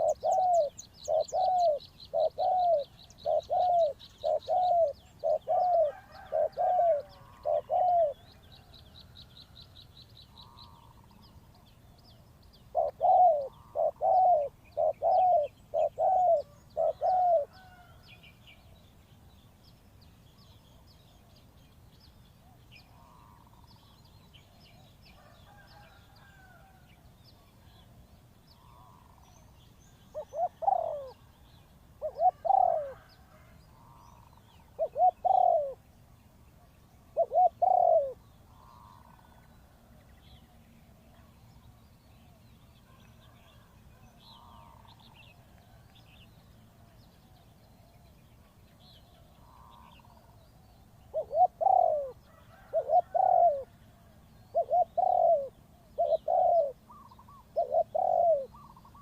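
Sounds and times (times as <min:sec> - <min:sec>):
dove cooing: 0:00.0 - 0:08.7, 0:12.7 - 0:18.0, 0:30.1 - 0:31.2, 0:32.0 - 0:35.8, 0:37.1 - 0:39.4, 0:51.1 - 0:59.0.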